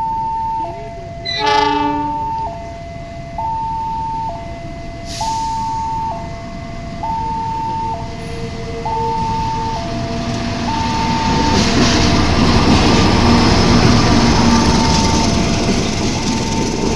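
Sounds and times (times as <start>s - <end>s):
level crossing alarm two-tone: 0.0s - 12.0s, 14.1s - 15.6s
train rumble: 0.0s - 16.9s
train horn blast: 1.2s - 2.6s.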